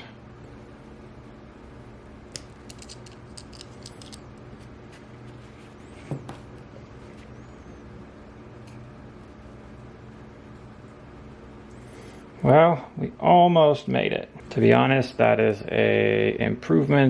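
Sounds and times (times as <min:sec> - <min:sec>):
low steady hum: 0:00.0 - 0:17.0
metal parts clicking and tapping: 0:02.4 - 0:04.3.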